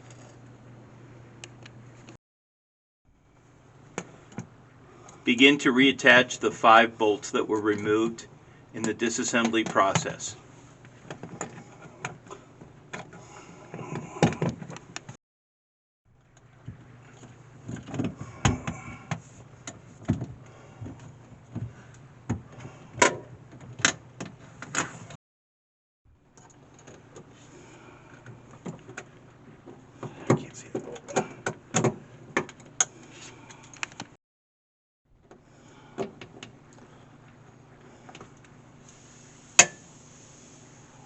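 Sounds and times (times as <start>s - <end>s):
steady low hum: 16.1s - 24.9s.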